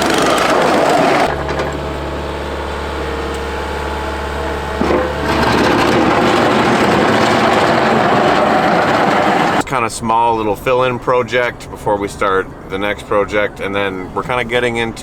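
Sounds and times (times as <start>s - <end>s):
machinery crunching and grinding: 0.0s - 9.6s
diesel engine hum: 0.0s - 9.7s.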